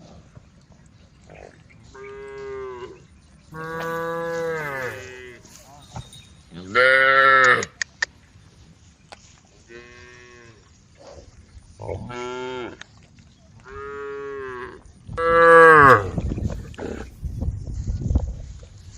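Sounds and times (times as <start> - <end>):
cows mooing: 2.0 - 5.7, 13.6 - 17.1.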